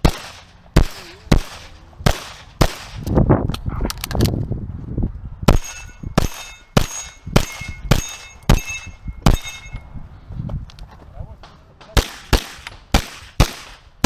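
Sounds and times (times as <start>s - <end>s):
handgun shots: 0.0s - 4.3s, 5.5s - 9.7s, 11.4s - 14.0s
steel target plate ringing: 5.5s - 10.1s.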